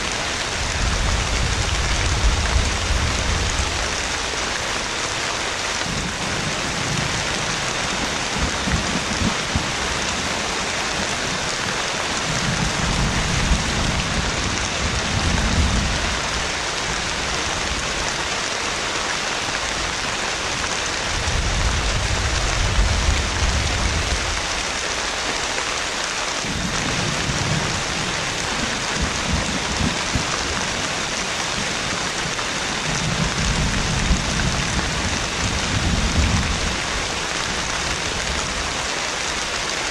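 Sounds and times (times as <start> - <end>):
heavy rain pouring: 0.0 - 39.9
thunder rumbling: 0.2 - 18.2, 19.9 - 25.2, 26.4 - 38.8.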